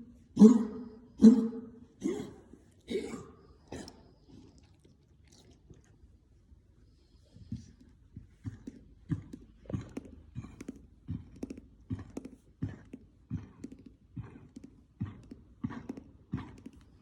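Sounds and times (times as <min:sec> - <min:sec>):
person coughing: 0:00.4 - 0:04.0.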